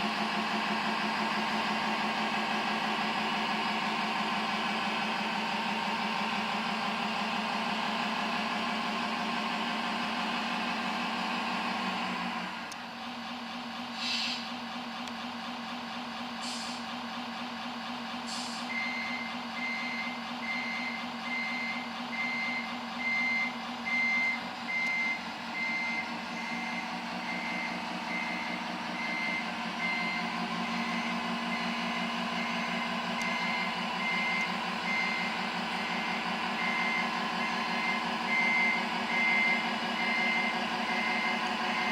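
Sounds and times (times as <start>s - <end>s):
simulated truck engine: 0.0s - 41.9s
air brake hisses: 13.9s - 14.5s, 16.4s - 16.9s, 18.3s - 18.8s
reversing beeper: 18.7s - 41.9s.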